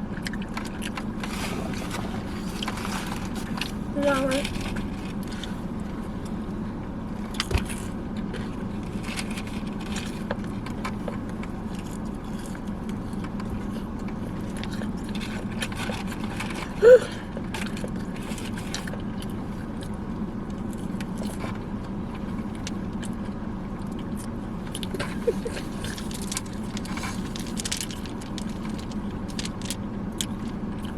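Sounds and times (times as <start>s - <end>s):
chewing and lip-smacking: 0.0s - 6.6s, 7.2s - 30.9s
low car hum: 0.0s - 30.9s.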